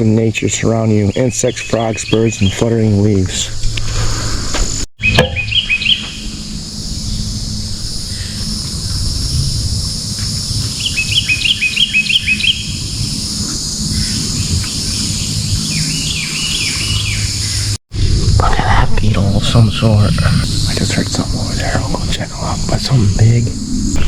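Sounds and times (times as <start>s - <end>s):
songbird chirping: 0.0s - 17.8s
high insect drone: 0.0s - 24.0s
low rumble: 2.3s - 24.0s.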